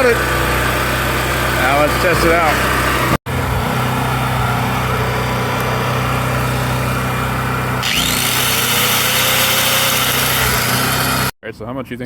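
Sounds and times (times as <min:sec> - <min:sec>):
generator engine running: 0:00.0 - 0:11.4.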